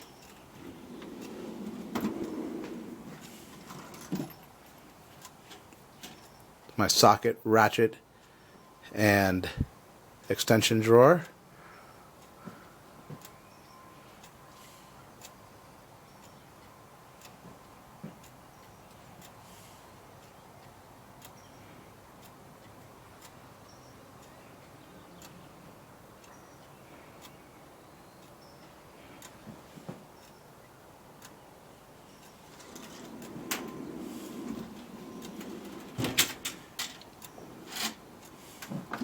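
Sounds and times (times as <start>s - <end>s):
tool box drawer rolling: 0.6s - 4.6s, 32.4s - 39.0s
metal drawer clicks and knocks: 0.9s - 4.4s, 32.6s - 38.0s
faint ticking: 11.2s - 39.0s.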